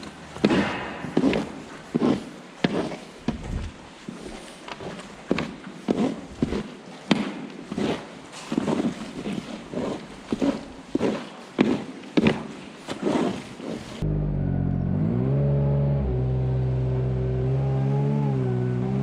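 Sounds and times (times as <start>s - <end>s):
engine running steadily: 14.0s - 19.0s.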